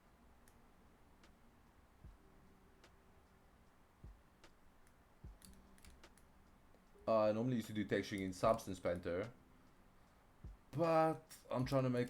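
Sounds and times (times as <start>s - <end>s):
computer mouse clicks: 4.4s - 6.8s.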